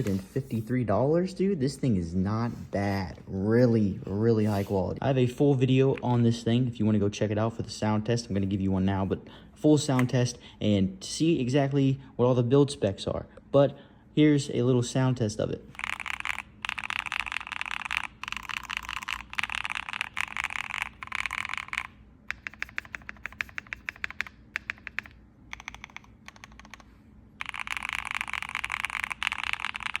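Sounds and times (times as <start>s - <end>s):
mechanical keyboard typing: 15.8s - 30.0s.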